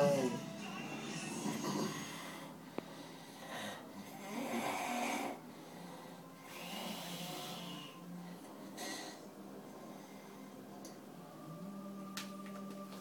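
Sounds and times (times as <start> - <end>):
man snoring: 4.1 - 5.4.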